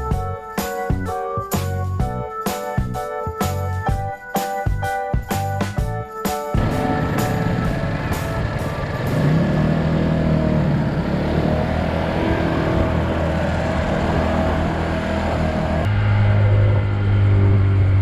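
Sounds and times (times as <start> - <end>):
steady noisy rush: 5.7 - 18.0
scooter engine running: 6.6 - 18.0.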